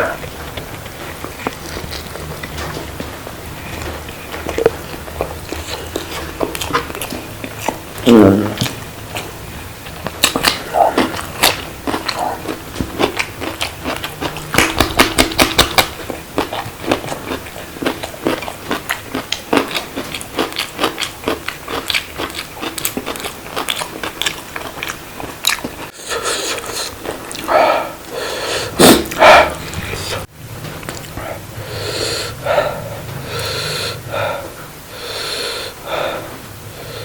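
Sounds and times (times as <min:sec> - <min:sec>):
person chewing and crunching: 0:00.0 - 0:31.4
mouth sounds: 0:07.7 - 0:08.8, 0:10.2 - 0:13.1, 0:25.9 - 0:30.3.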